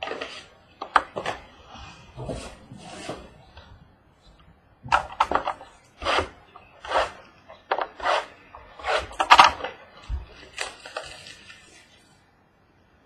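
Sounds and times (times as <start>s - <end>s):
packaging tearing: 10.4s - 12.0s.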